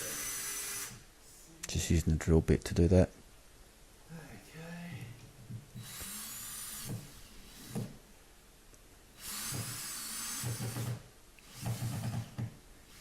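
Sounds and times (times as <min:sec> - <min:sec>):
electric drill whining: 0:00.0 - 0:01.0, 0:05.8 - 0:07.9, 0:09.2 - 0:13.0.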